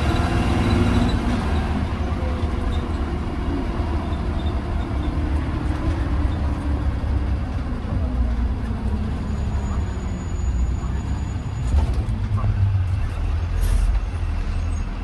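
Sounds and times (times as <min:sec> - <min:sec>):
bus engine drone: 0:00.0 - 0:15.0
road rumble: 0:00.0 - 0:15.0.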